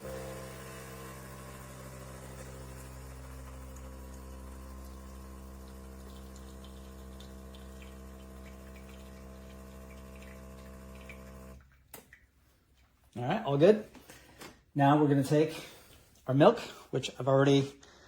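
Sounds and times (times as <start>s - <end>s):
espresso machine pump humming: 0.0s - 11.6s
coffee dripping into mug: 2.4s - 11.6s.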